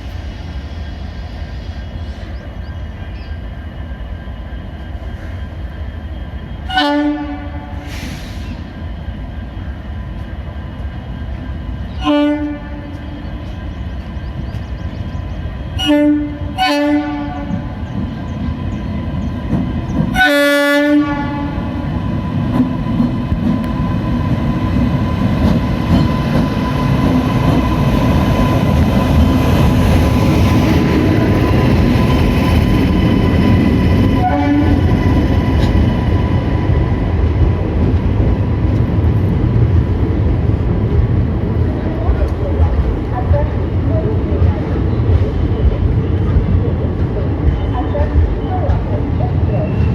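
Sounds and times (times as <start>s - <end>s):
train rumbling on rails: 0.0s - 49.9s
locomotive horn blast: 6.7s - 8.1s, 12.0s - 13.0s, 15.8s - 17.6s, 20.1s - 21.7s, 34.2s - 34.8s.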